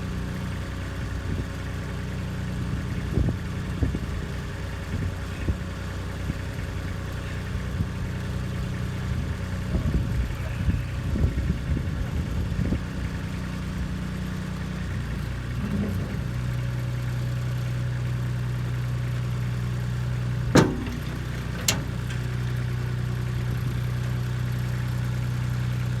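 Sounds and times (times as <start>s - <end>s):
diesel tractor engine running: 0.0s - 26.0s
clattering knocks: 20.4s - 22.9s.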